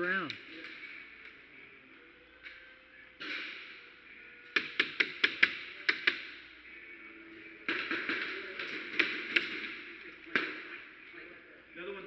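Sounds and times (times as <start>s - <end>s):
airsoft guns firing: 7.6s - 10.8s.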